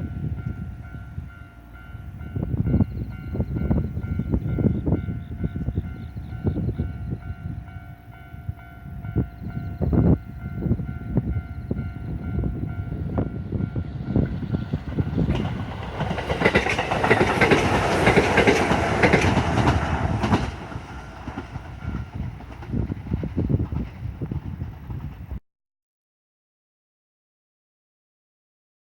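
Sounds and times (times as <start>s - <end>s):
train wheels clattering on rails: 13.0s - 25.4s.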